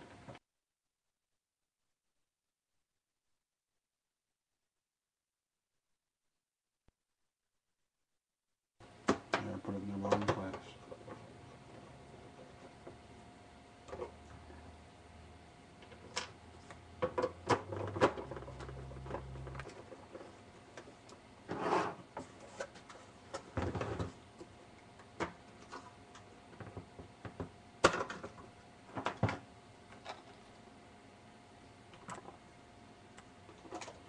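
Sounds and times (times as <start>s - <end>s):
faint steady hum: 8.8s - 34.0s.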